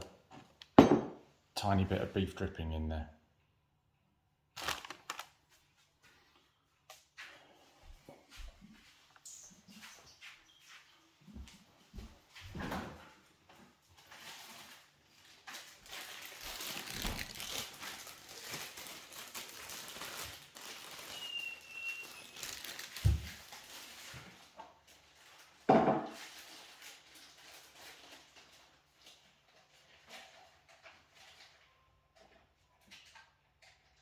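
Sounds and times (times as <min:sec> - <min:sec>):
knock on bowl: 0:00.8 - 0:01.2, 0:25.7 - 0:26.1
high squeak: 0:21.1 - 0:22.6.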